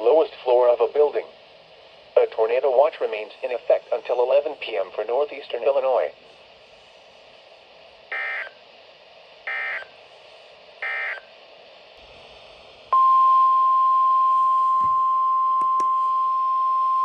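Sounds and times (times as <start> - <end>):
faint radio hiss: 0.0 - 15.0
short data bursts: 8.1 - 8.6, 9.4 - 10.0, 10.8 - 11.3
steady warning alarm tone: 8.1 - 8.6, 9.4 - 10.0, 10.8 - 11.3.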